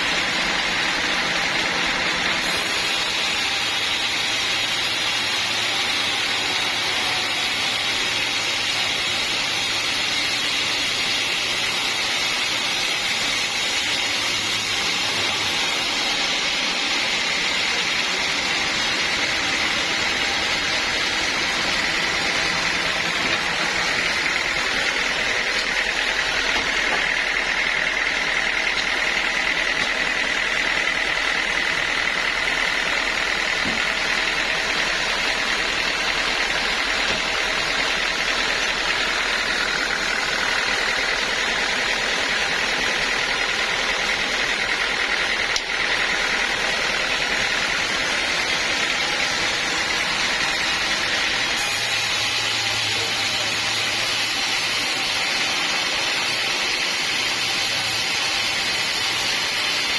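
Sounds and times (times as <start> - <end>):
band sawmill running: 0.0 - 59.9.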